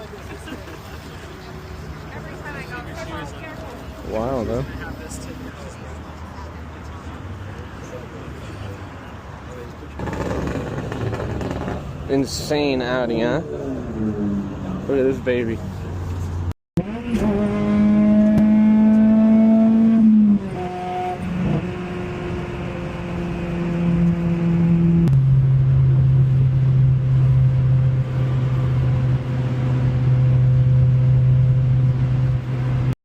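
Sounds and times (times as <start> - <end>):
car engine and exhaust droning: 9.6 - 32.9.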